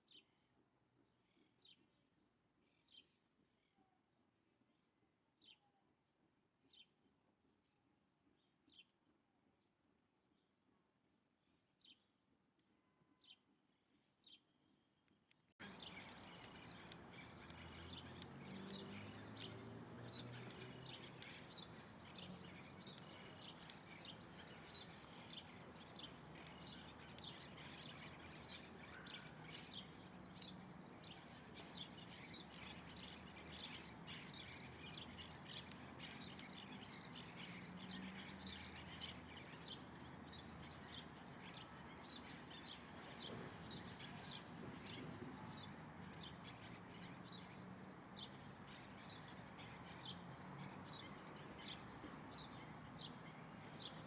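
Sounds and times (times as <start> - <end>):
small birds chirping: 11.5 - 54.0.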